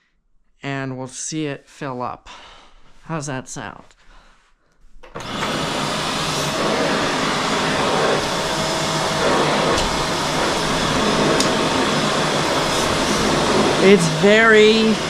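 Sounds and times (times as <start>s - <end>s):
vacuum cleaner running on carpet: 5.2s - 15.0s.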